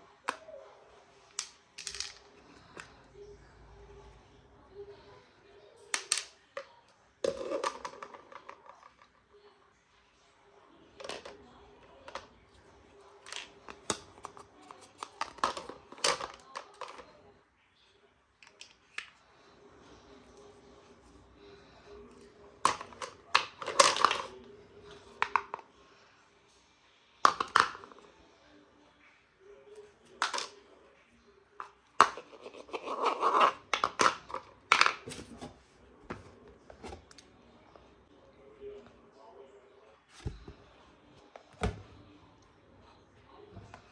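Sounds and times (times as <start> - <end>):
plastic parts clicking and knocking: 13.2 - 17.1, 22.6 - 24.3, 27.2 - 28.0, 30.2 - 30.6.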